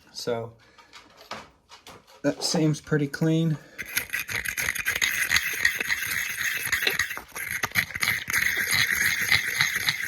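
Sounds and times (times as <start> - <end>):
wire brush scrubbing metal: 3.7 - 10.0.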